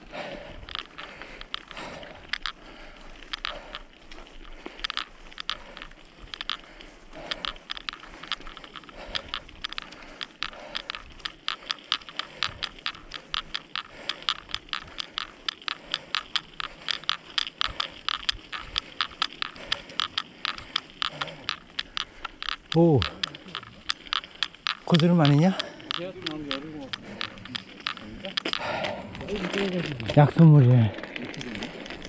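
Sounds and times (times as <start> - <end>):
footsteps crunching on trail: 0.0 - 32.0.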